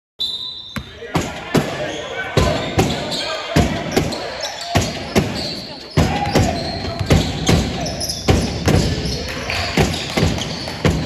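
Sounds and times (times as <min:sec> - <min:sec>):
murmur of voices: 0:00.8 - 0:11.0
basketball bouncing on wooden floor: 0:04.8 - 0:11.0.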